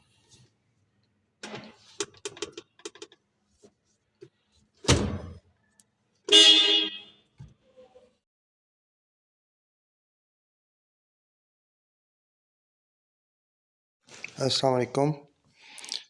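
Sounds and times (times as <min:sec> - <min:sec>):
short car horn beep: 0:06.3 - 0:07.2.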